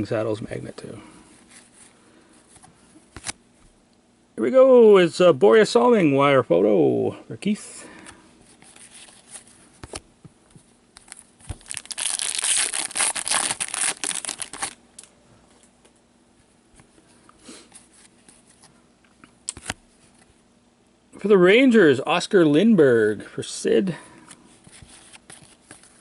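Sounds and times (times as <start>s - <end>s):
foil wrapper tearing and crinkling: 11.1s - 14.8s.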